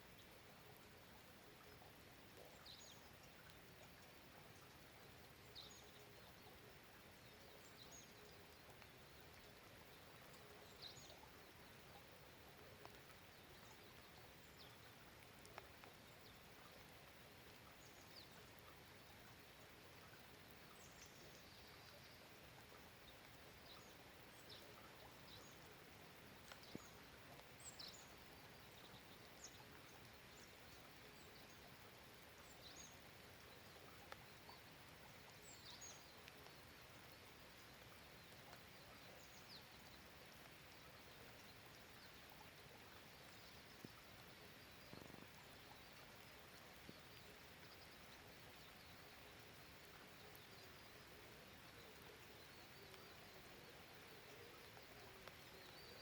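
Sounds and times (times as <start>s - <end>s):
light rain hissing: 0.0s - 56.0s.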